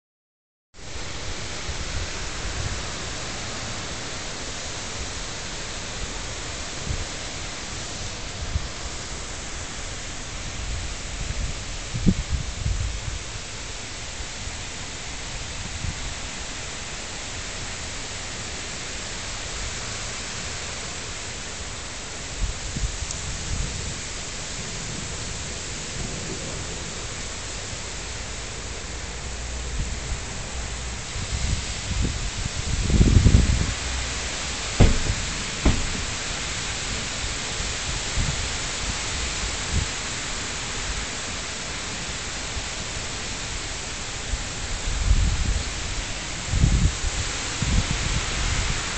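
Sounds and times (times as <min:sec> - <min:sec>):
heavy rain pouring: 0:00.8 - 0:48.9
wind buffeting microphone: 0:10.2 - 0:13.4, 0:29.6 - 0:39.0, 0:44.8 - 0:48.9
low thump: 0:34.8 - 0:36.2.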